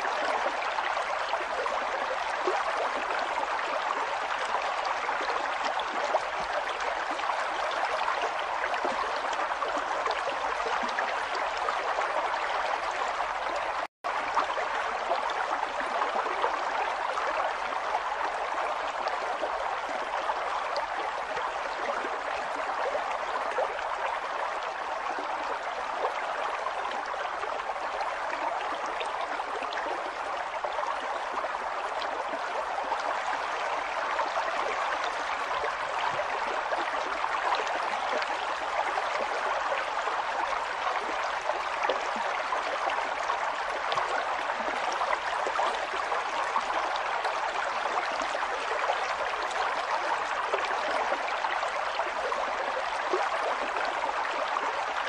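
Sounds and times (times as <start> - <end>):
river water flowing: 0.0 - 55.0.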